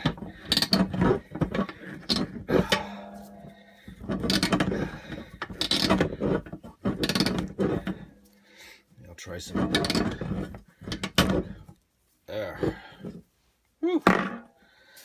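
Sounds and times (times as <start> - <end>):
metallic clicking and scraping: 0.0 - 8.4, 9.4 - 11.8.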